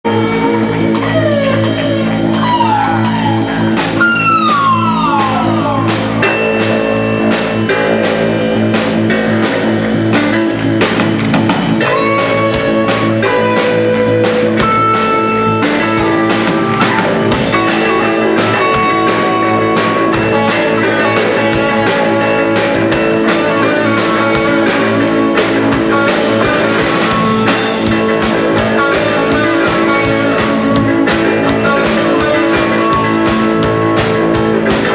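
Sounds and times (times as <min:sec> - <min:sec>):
rock band with guitar: 0:00.0 - 0:34.9.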